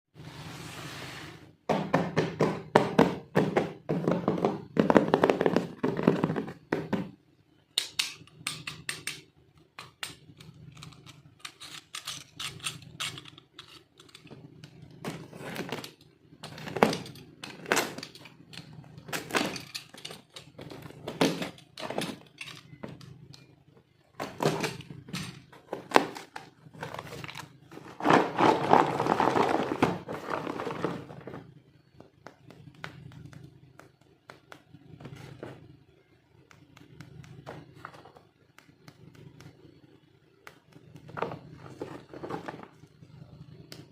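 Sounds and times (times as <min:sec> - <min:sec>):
plastic toy pieces clicking: 0:07.8 - 0:14.3
packaging rustling: 0:25.6 - 0:31.2.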